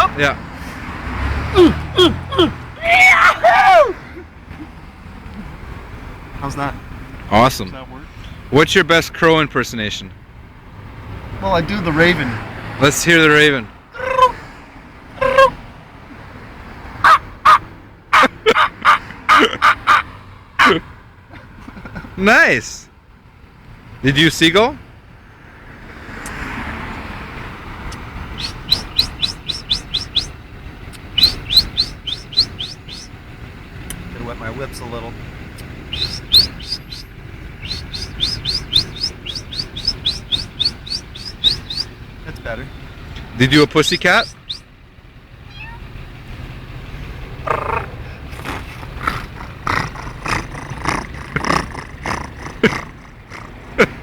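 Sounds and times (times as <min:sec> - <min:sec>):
man imitating dog barks: 0:00.0 - 0:00.2, 0:01.5 - 0:04.0, 0:14.0 - 0:14.4, 0:15.2 - 0:15.6, 0:17.0 - 0:20.9, 0:47.6 - 0:54.0
traffic rumble: 0:00.0 - 0:54.0
vehicle passing by: 0:00.0 - 0:54.0
man whistling bird chirps: 0:28.4 - 0:30.4, 0:31.1 - 0:33.1, 0:35.9 - 0:41.9, 0:44.0 - 0:44.7.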